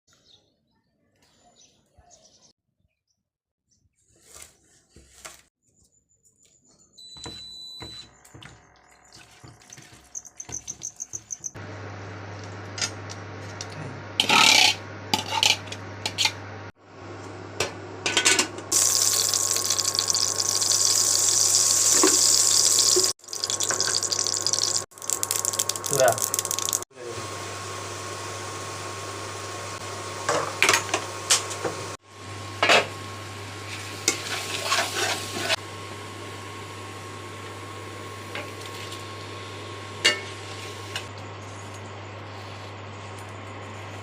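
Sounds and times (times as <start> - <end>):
tap running: 7.1 - 11.7, 18.7 - 26.8
utensils and pots clinking: 12.8 - 16.4, 18.0 - 24.8, 40.0 - 41.1.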